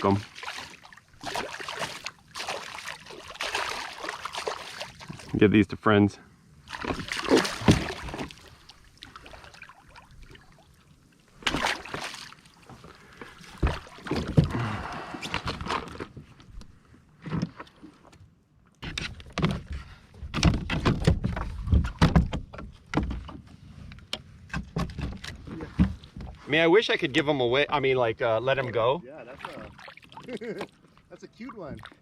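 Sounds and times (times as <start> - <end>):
water splashes: 0.0 - 5.5, 6.6 - 14.9, 28.5 - 32.0
knocks and thumps on a kayak: 6.8 - 8.4, 11.4 - 14.6, 18.8 - 23.5, 24.5 - 26.4.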